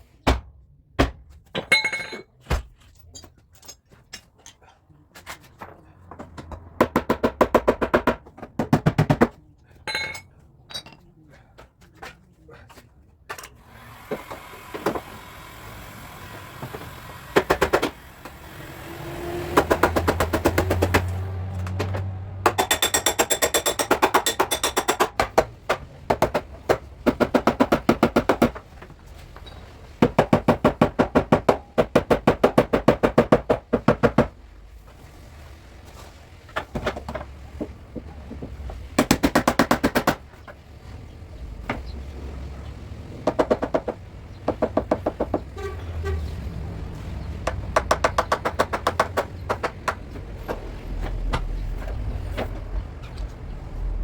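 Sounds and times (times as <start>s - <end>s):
hammer tapping sheet metal: 19.5s - 28.6s.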